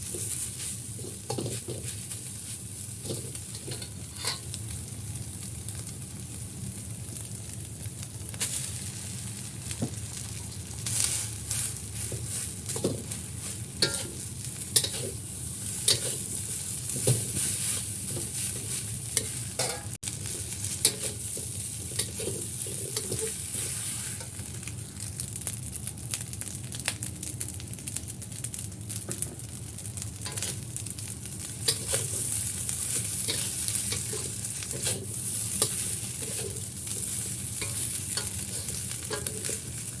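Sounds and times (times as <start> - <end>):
spatula scraping a pan: 0.0 - 4.5, 10.8 - 24.4, 30.3 - 30.6, 31.6 - 40.0
rice sizzling in a pan: 0.0 - 40.0.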